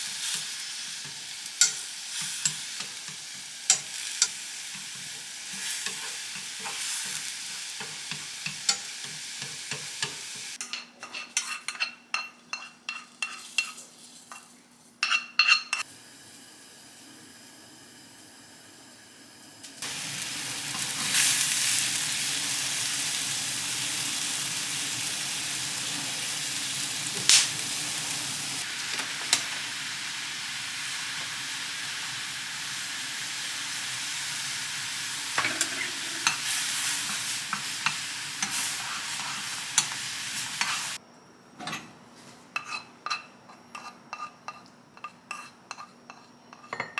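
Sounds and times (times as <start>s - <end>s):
food sizzling in a pan: 0.0s - 41.0s
utensils clinking and scraping: 35.4s - 36.5s.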